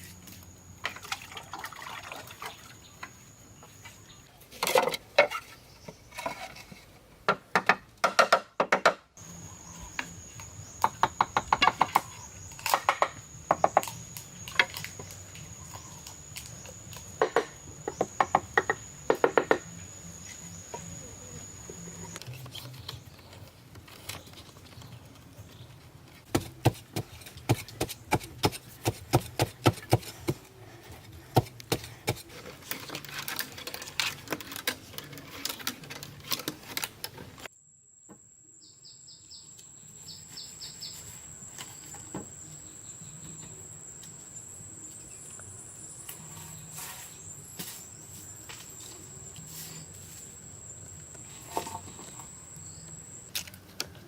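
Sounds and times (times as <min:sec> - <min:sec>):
high insect drone: 0:09.2 - 0:22.3.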